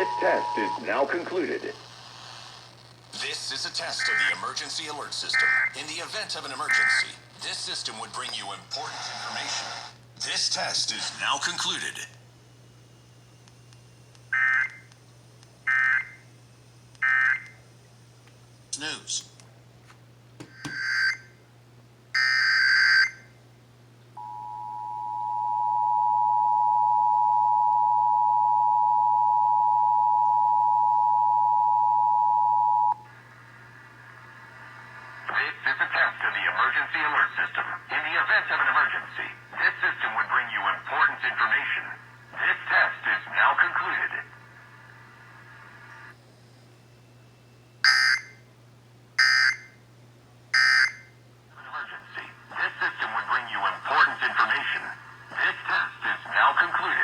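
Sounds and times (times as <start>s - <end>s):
two-tone attention signal: 0.0s - 0.9s, 24.2s - 33.0s
faint steady hum: 0.0s - 57.0s
warbling digital data tones: 20.6s - 21.3s.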